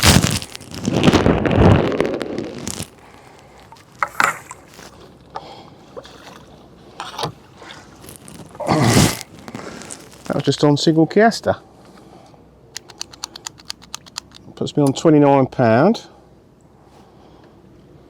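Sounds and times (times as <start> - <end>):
water sloshing and splashing: 2.9 - 8.6.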